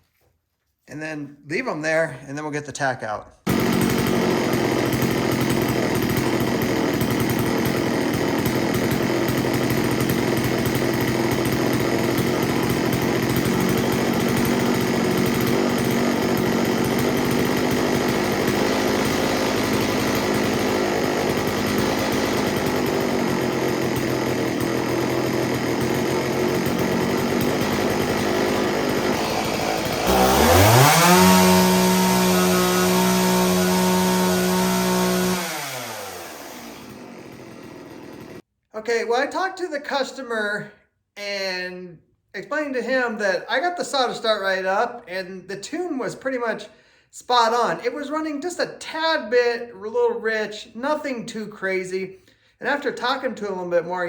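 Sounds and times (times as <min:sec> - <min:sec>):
chainsaw idling and revving: 0:03.5 - 0:38.5.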